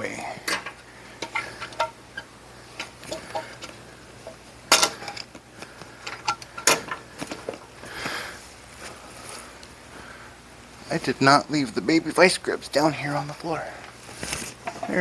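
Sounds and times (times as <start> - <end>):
scraping rustle: 13.9 - 15.0.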